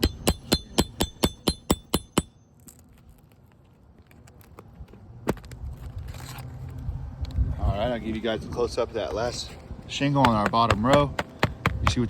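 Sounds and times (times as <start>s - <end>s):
hammer tapping metal: 0.0s - 2.4s.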